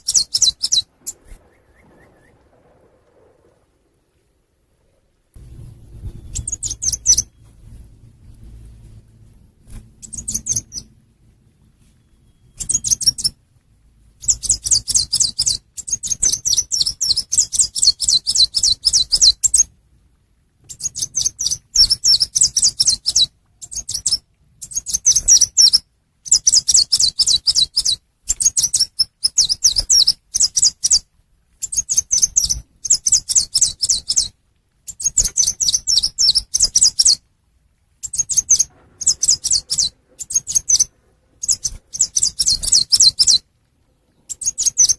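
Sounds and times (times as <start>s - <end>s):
songbird chittering trills: 0.0s - 2.8s, 5.9s - 7.6s, 10.0s - 11.0s, 11.9s - 13.4s, 14.2s - 19.7s, 31.6s - 34.3s, 38.0s - 44.9s.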